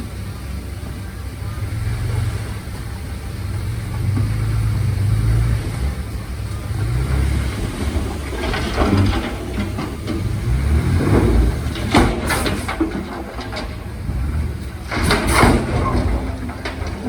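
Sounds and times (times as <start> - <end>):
diesel machinery rumbling: 0.0 - 17.0
sharp metallic clanks: 7.8 - 17.0.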